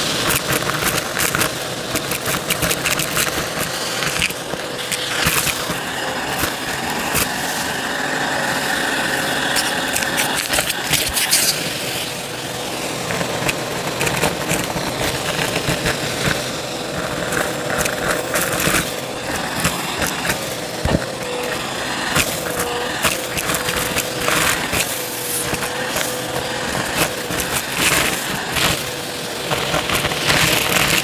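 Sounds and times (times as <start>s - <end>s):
motor whine: 0.0s - 31.0s
vacuum cleaner running: 0.0s - 31.0s.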